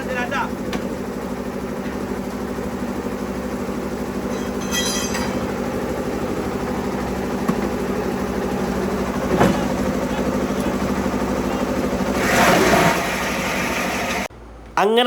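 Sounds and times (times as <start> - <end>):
ice crushing machine humming: 0.0 - 14.3.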